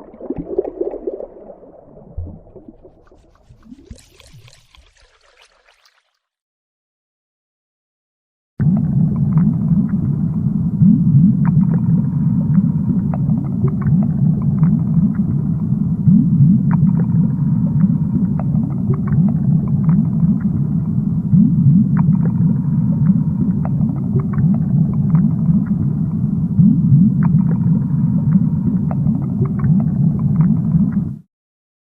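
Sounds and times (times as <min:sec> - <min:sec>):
muffled underwater rumble: 0:00.0 - 0:04.5, 0:08.6 - 0:31.2
quick rising blips: 0:00.0 - 0:05.0.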